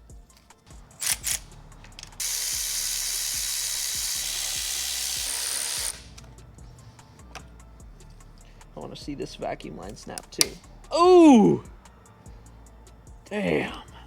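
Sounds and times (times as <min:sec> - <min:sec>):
air tool hissing: 0:00.0 - 0:14.0
sharp clicks: 0:00.3 - 0:06.4, 0:09.8 - 0:10.7.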